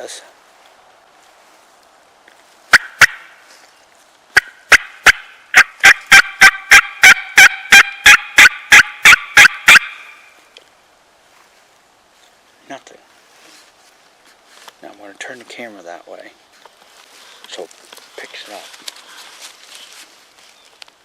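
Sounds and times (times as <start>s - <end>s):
turkey call yelps: 2.7s - 3.4s, 4.4s - 10.3s.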